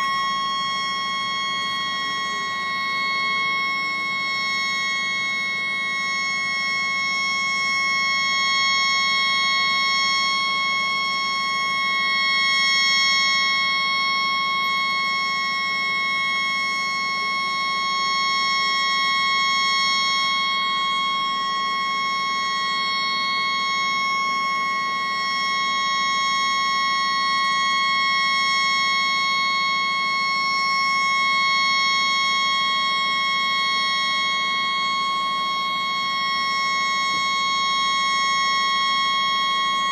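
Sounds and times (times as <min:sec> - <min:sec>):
high-pitched boat horn: 0:00.0 - 0:19.6.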